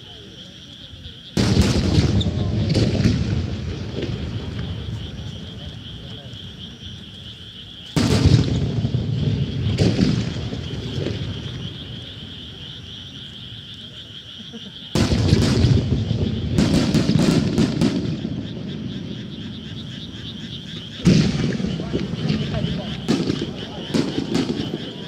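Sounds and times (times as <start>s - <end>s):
fireworks sharp cracks: 1.4s - 6.4s, 7.9s - 12.4s, 14.9s - 25.0s
fireworks booming: 1.4s - 6.8s, 8.0s - 12.6s, 14.9s - 25.0s.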